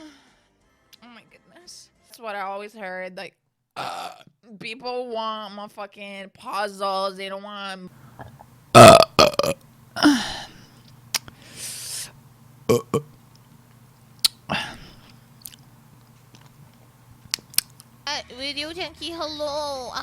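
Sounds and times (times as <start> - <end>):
woman burping: 3.8 - 4.2, 8.2 - 10.7, 12.7 - 13.2
throaty sounds: 8.0 - 13.2
mouth clicks: 8.1 - 9.7, 10.9 - 12.0, 12.7 - 14.6, 15.4 - 15.7, 17.2 - 18.0.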